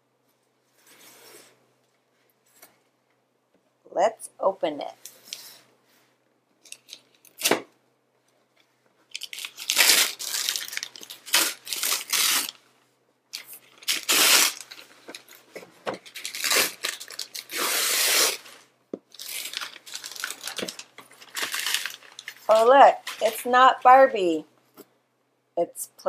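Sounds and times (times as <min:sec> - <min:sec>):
wrapping paper ripping and crinkling: 0:09.1 - 0:12.6, 0:13.4 - 0:23.5.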